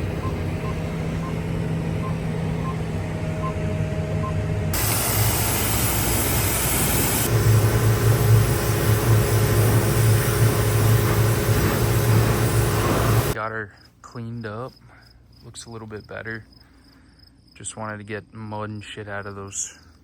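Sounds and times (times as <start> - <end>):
engine humming: 0.0 - 13.4
pressure washer spray hissing: 4.8 - 13.4.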